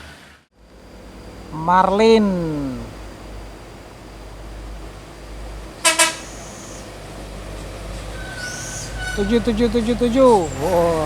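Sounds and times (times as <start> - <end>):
bus engine rumbling: 0.0 - 11.0
bus horn toots: 5.8 - 6.9, 8.1 - 11.0.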